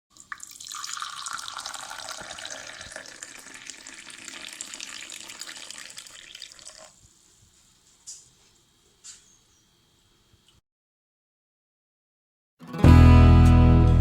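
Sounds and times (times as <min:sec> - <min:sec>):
water running into a vessel: 0:00.1 - 0:07.1.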